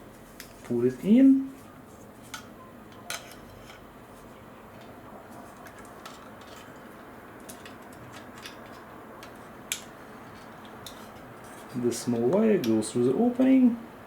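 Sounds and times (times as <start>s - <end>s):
plastic parts clicking: 2.3s - 3.8s, 5.5s - 11.6s.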